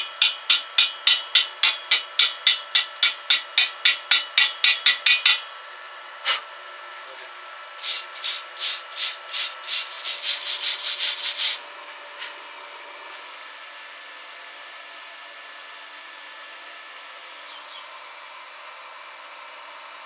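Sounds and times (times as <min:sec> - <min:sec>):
hand scraping on metal: 0:07.8 - 0:11.6.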